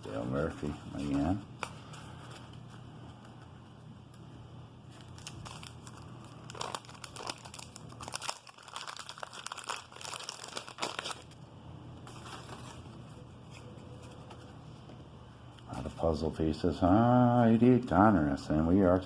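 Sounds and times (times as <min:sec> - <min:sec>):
wax paper pack tearing and crinkling: 0:05.0 - 0:11.4.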